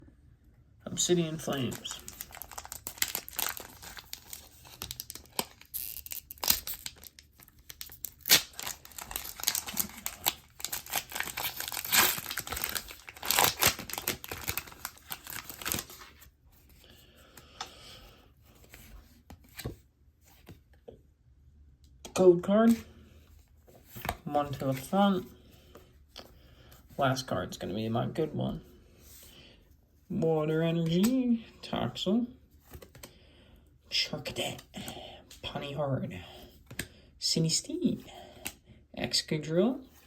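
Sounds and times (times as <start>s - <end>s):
foil wrapper tearing and crinkling: 1.5s - 16.0s.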